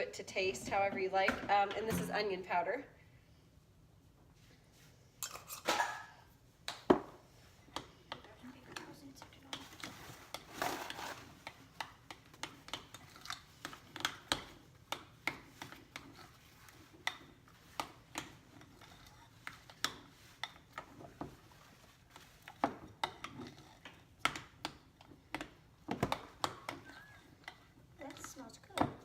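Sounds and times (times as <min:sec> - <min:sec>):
utensil scraping a bowl: 0:09.5 - 0:14.4, 0:15.3 - 0:24.1.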